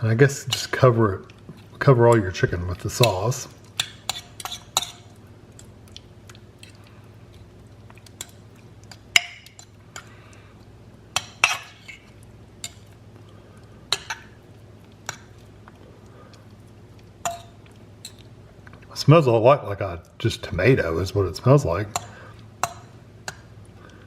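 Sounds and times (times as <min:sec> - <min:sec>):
utensil clinking against bowl: 0:03.8 - 0:05.1, 0:17.2 - 0:18.2.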